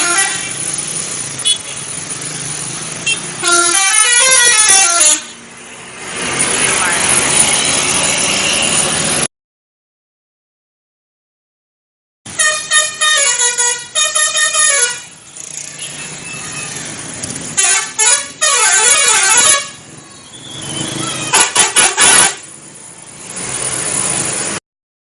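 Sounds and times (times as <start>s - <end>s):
multi-tone musical air horn: 0.0s - 0.5s, 3.4s - 5.4s, 12.3s - 15.1s, 17.6s - 19.8s, 21.3s - 22.4s
engine and traffic noise: 0.0s - 9.3s, 12.3s - 24.6s.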